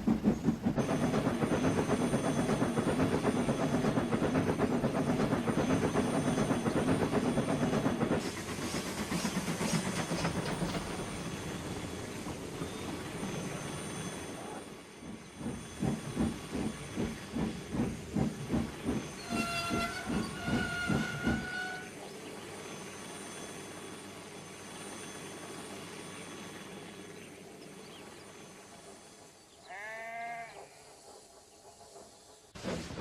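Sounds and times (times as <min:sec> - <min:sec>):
steady steam hiss: 0:00.0 - 0:19.2, 0:20.9 - 0:33.0
steam locomotive chuffing: 0:00.0 - 0:33.0
steam whistle blasts: 0:19.2 - 0:21.9.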